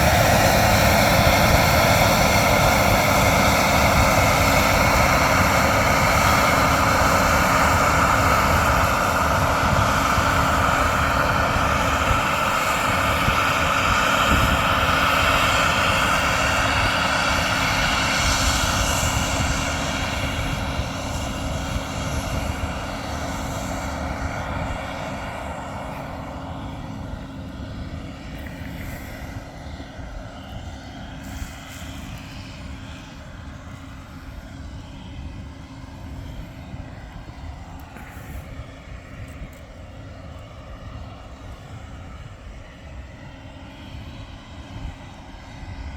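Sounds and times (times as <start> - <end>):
combine harvester running: 0.0 - 29.4.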